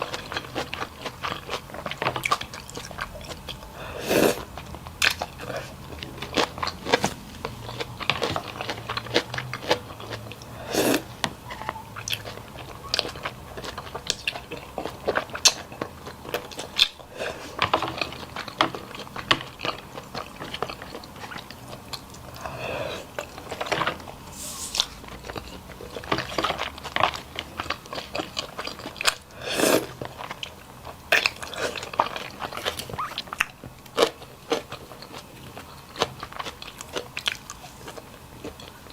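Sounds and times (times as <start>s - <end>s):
person chewing and crunching: 0.0s - 38.9s.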